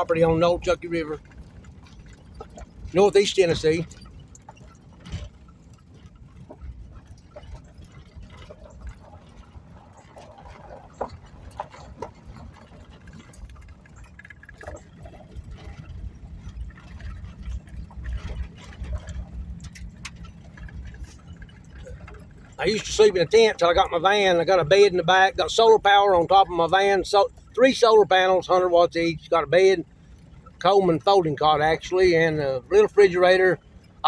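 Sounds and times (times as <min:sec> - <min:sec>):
clicks and rattles: 0:00.0 - 0:24.6
van rumbling on gravel: 0:00.0 - 0:34.0.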